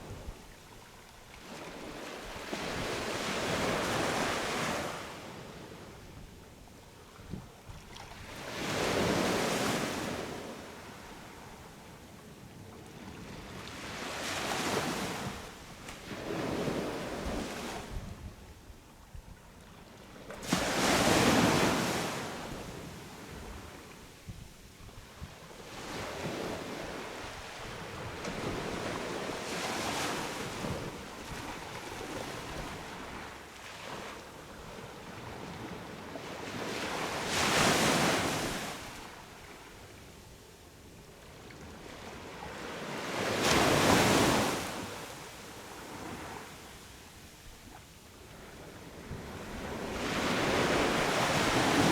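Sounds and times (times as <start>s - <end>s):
sea waves breaking on beach: 48.4s - 51.9s.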